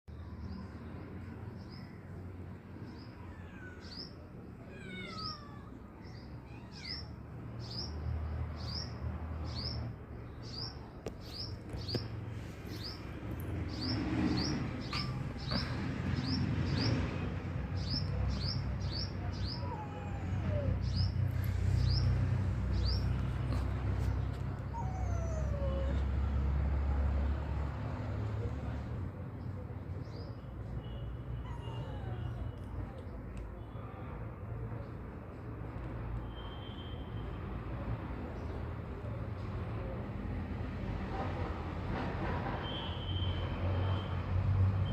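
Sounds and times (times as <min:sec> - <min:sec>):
cat meowing: 0:03.2 - 0:07.1, 0:19.5 - 0:21.1, 0:31.4 - 0:32.5.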